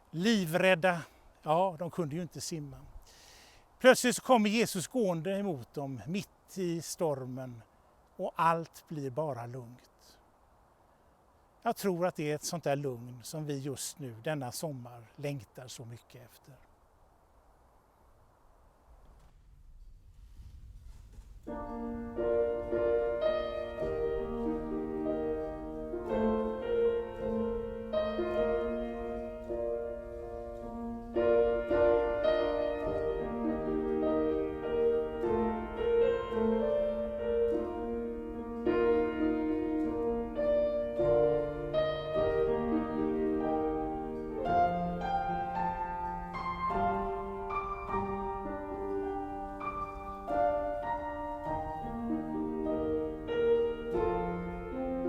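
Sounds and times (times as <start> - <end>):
slow solo piano: 21.2 - 55.0.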